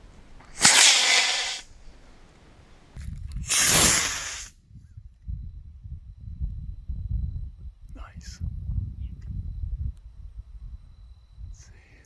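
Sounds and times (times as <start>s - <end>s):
model rocket motor hissing: 0.5s - 1.6s, 3.5s - 4.5s.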